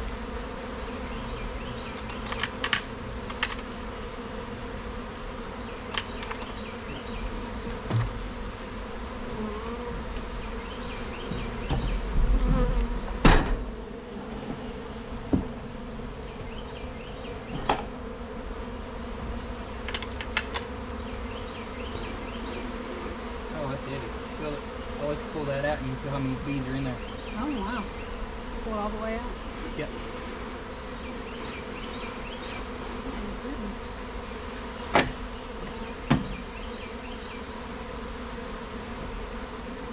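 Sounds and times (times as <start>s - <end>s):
bees buzzing in a swarm: 0.0s - 39.9s
loud sharp knock: 13.2s - 13.8s, 34.9s - 35.2s.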